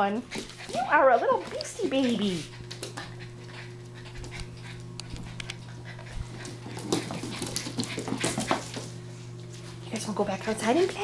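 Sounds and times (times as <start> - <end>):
puppy claws clicking on wood floor: 4.0 - 9.0.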